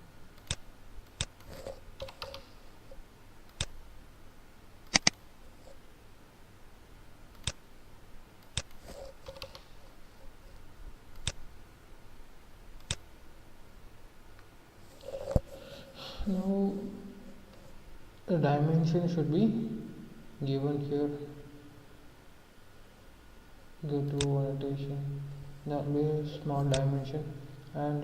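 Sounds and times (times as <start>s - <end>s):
computer mouse clicking: 0.4s - 2.6s, 3.5s - 3.8s, 4.8s - 5.2s, 7.3s - 7.6s, 8.4s - 9.8s, 11.1s - 11.4s, 12.8s - 13.0s, 26.6s - 26.9s.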